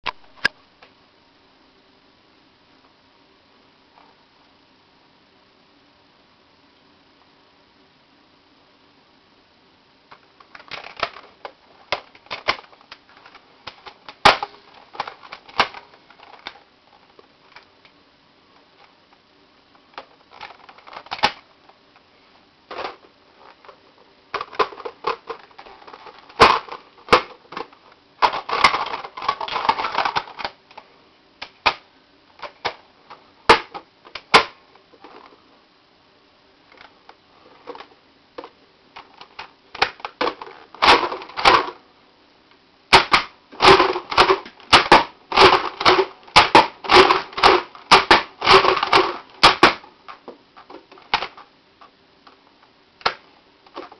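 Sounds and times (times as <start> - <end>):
plastic blaster action clacking: 10.5 - 11.2, 11.9 - 12.7, 20.3 - 21.4, 28.2 - 30.5, 42.9 - 49.8.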